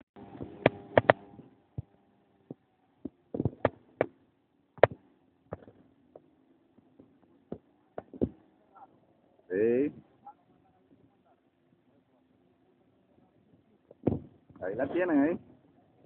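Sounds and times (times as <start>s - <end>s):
faint steady hum: 0.2s - 16.0s
sharp knocks and clicks: 0.6s - 1.2s, 3.0s - 4.2s, 4.8s - 6.3s.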